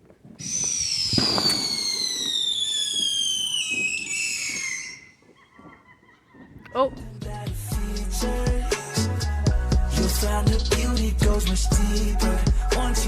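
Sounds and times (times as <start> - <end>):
firework boom: 0.4 - 4.9
firework whistling: 0.4 - 5.8.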